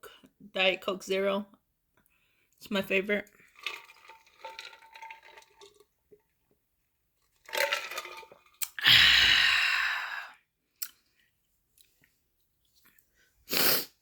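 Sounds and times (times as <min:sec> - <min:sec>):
person sneezing loudly: 0:13.5 - 0:14.0.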